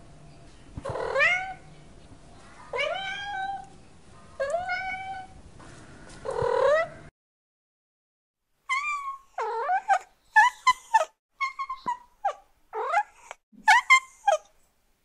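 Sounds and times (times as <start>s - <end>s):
cat meowing: 2.7s - 3.7s, 4.4s - 5.4s.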